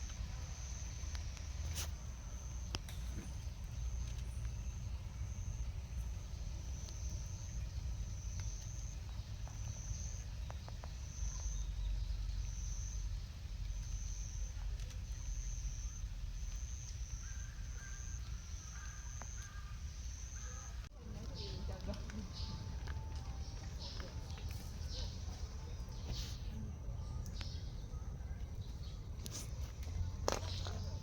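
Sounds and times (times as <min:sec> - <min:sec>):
steady low rumble: 0:20.8 - 0:31.0.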